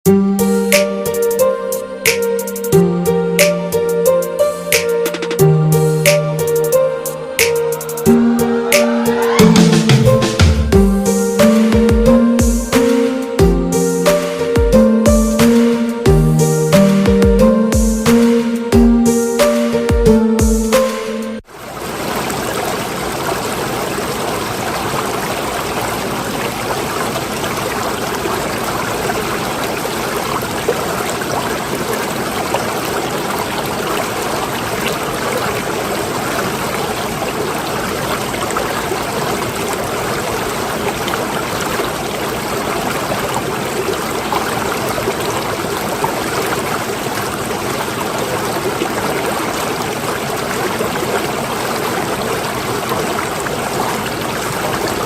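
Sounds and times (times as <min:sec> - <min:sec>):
rush of moving water: 0:21.4 - 0:55.0.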